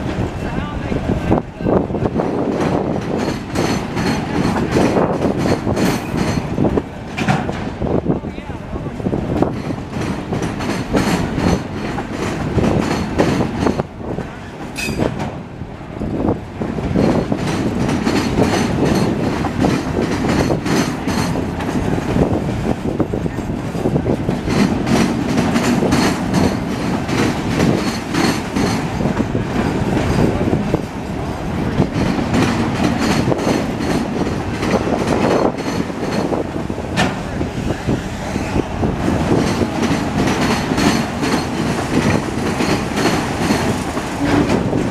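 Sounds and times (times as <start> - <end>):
train wheels rumbling on rail: 0.0 - 44.9
wheels clicking over rail joints: 2.2 - 7.8, 16.8 - 37.4, 39.0 - 44.9.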